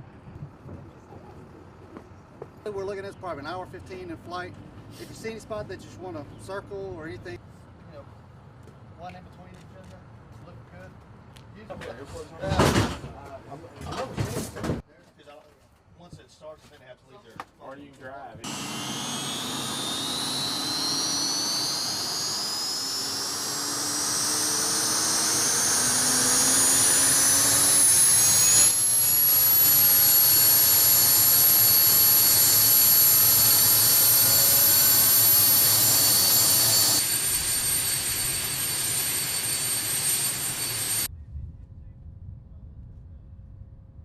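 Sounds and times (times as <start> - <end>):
turbine engine whine: 18.4 - 44.0.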